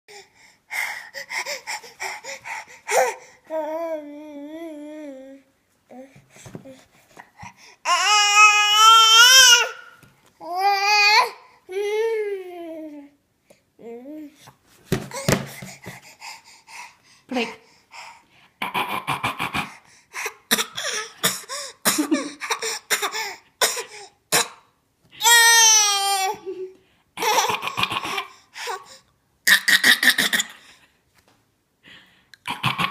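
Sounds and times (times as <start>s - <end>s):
baby wavering aah: 7.9s - 12.8s
baby fake coughing: 20.5s - 24.7s, 27.2s - 28.4s, 29.5s - 30.6s, 32.5s - 32.9s.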